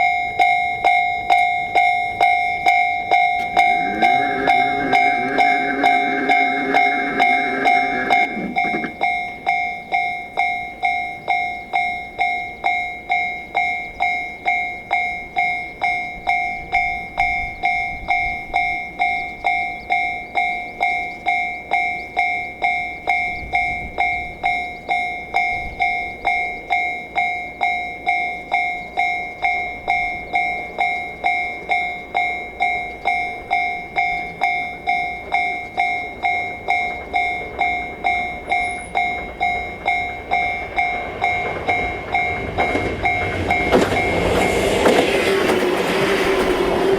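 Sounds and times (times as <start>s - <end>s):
pitched tone: 0.0s - 10.4s
level crossing warning bell: 0.0s - 46.9s.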